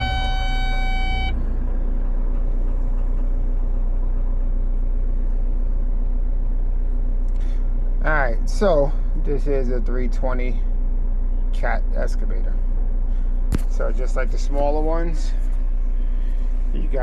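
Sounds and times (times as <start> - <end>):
steady high tone: 0.0 - 1.6
diesel engine droning: 0.0 - 17.0.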